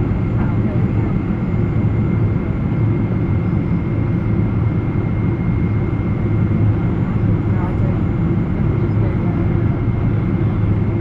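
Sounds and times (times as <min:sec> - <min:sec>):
airliner low rumble: 0:00.0 - 0:11.0.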